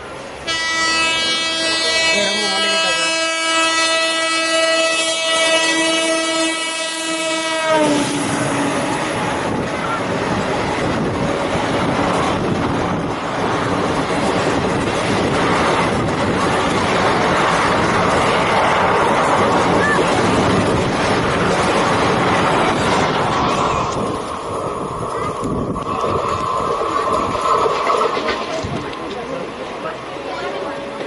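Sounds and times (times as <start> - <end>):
train rumbling past: 0.0 - 31.0
diesel locomotive horn blast: 0.4 - 9.2
wheels clattering over rail joints: 9.5 - 31.0.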